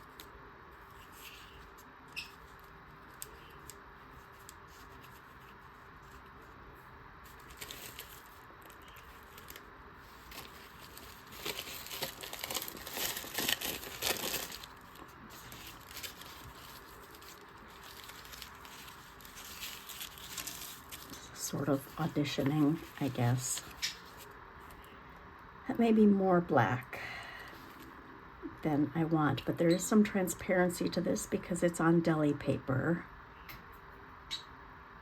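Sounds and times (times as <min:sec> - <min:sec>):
paper rustling and crinkling: 0:00.0 - 0:24.8.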